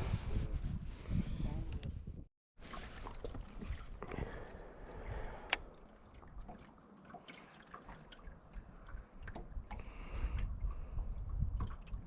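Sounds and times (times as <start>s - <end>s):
faint water sounds: 2.6s - 12.0s.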